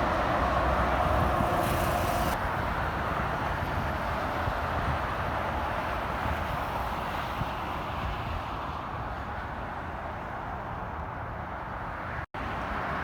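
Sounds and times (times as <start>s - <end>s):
vehicle engine and tyre noise: 0.0s - 13.0s.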